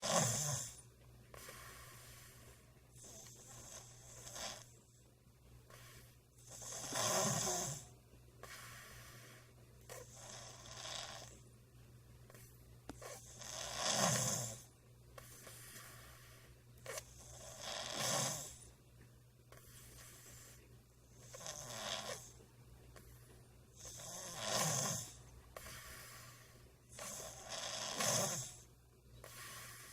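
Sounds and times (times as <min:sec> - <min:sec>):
baby snoring: 0:00.0 - 0:00.8, 0:01.4 - 0:04.8, 0:05.7 - 0:11.4, 0:12.3 - 0:18.7, 0:21.2 - 0:22.4, 0:23.8 - 0:29.9.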